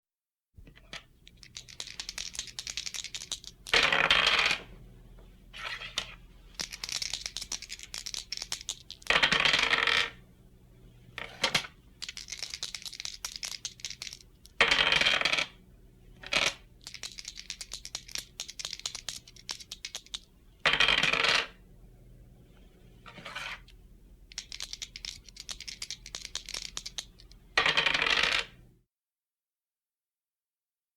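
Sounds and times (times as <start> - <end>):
dice clattering when thrown: 0.8 - 4.6, 5.8 - 10.1, 11.4 - 15.5, 16.2 - 21.5, 24.3 - 28.5
dice rattling in a shaker: 0.9 - 4.6, 6.5 - 10.1, 11.5 - 15.5, 16.2 - 21.4, 24.3 - 28.5.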